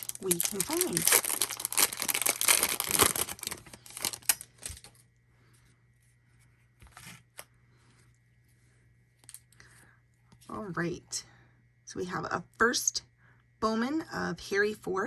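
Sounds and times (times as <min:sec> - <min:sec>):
wrapper tearing and crinkling: 0:00.0 - 0:05.0.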